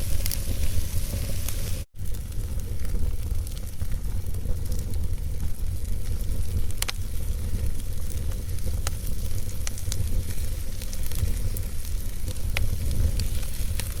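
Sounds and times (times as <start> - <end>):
fire flames rumbling: 0.0 - 14.0
logs crackling and popping: 0.0 - 14.0.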